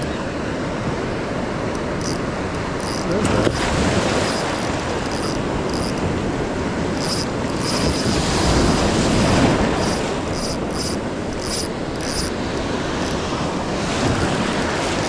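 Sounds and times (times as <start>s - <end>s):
surf washing: 0.0s - 15.0s
fishing reel chirps: 1.8s - 3.6s, 4.2s - 6.1s, 6.9s - 8.9s, 9.7s - 13.2s
wind on microphone: 2.0s - 15.0s.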